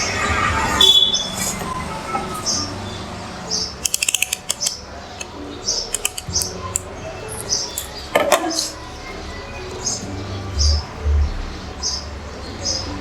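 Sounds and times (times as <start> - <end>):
sharp clicks: 3.8 - 5.3, 5.9 - 6.9.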